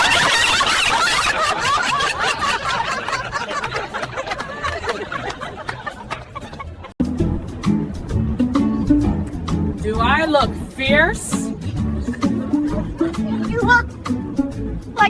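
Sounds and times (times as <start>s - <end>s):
people laughing: 0.0s - 7.0s, 11.9s - 13.8s.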